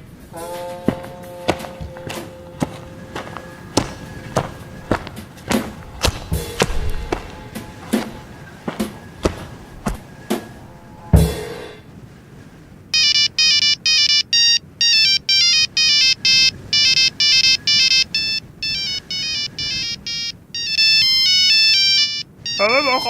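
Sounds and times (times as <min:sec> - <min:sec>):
loud ringing hit: 0:00.4 - 0:08.9
phone ringtone beeping melody: 0:13.0 - 0:23.0.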